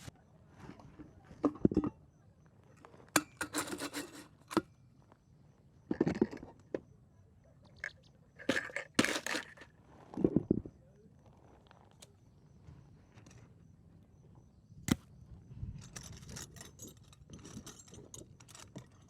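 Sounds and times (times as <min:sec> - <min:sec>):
camp gear knocking and rustling: 0:00.0 - 0:02.0, 0:02.9 - 0:04.7, 0:08.5 - 0:10.7, 0:15.7 - 0:19.0.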